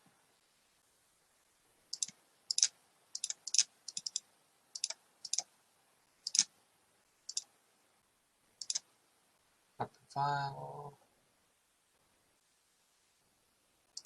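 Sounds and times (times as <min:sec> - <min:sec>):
computer mouse clicking: 0:01.9 - 0:04.2, 0:04.8 - 0:05.5, 0:06.2 - 0:06.5, 0:07.3 - 0:07.5, 0:08.6 - 0:08.8.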